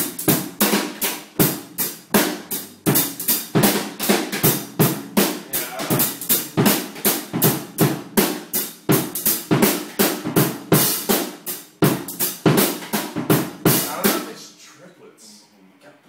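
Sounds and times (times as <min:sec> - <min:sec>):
drum kit groove: 0:00.0 - 0:14.6.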